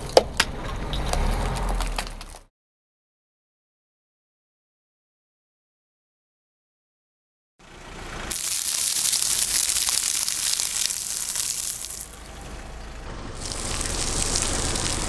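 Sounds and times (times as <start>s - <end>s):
car tyre crunching objects: 8.0s - 15.0s.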